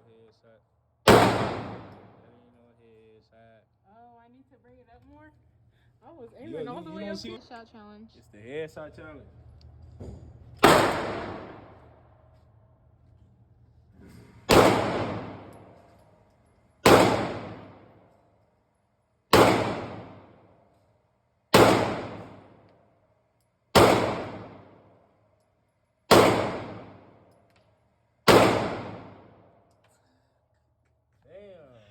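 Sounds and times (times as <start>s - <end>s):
gunshots with ringing tail: 1.1s - 2.3s, 10.6s - 11.9s, 14.5s - 15.8s, 16.8s - 18.0s, 19.3s - 20.5s, 21.5s - 22.6s, 23.8s - 24.8s, 26.1s - 27.2s, 28.3s - 29.4s.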